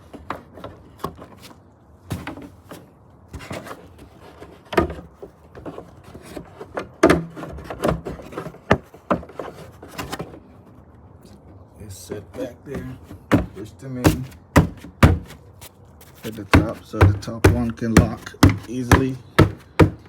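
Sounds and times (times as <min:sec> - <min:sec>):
plastic engine cover knocking: 0:13.2 - 0:15.4, 0:16.4 - 0:20.0.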